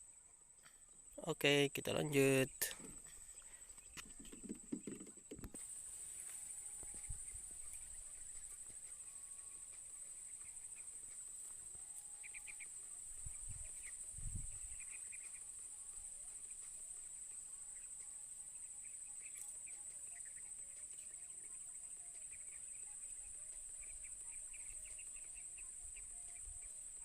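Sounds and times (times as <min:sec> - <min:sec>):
bird chirps: 0:01.9 - 0:27.0
high-pitched insect drone: 0:05.6 - 0:27.0.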